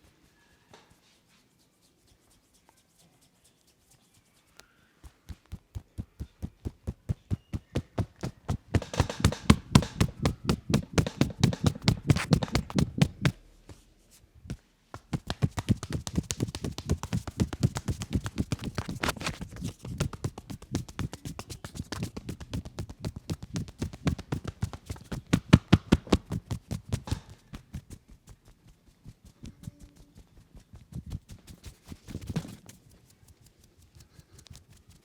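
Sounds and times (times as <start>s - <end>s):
hands tapping and slapping on head: 5.0s - 13.8s, 14.5s - 28.5s.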